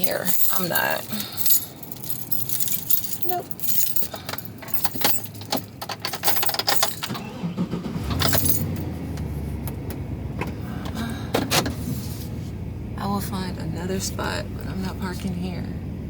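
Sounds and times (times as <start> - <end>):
keys jangling: 0.0 - 7.2, 8.2 - 8.8
van engine idling: 0.1 - 16.0.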